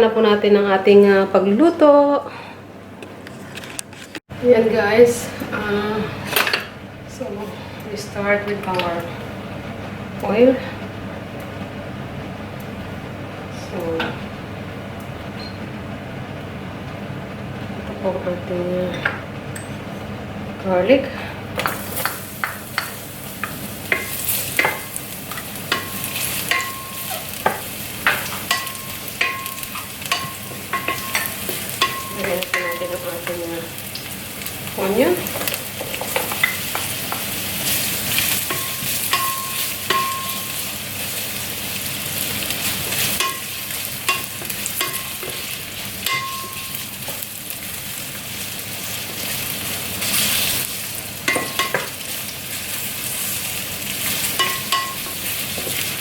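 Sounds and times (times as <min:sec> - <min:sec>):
utensil tapping pan: 0:21.6 - 0:40.8, 0:42.9 - 0:47.3, 0:51.2 - 0:52.0, 0:54.2 - 0:55.8
garlic sizzling in oil: 0:21.6 - 0:56.0.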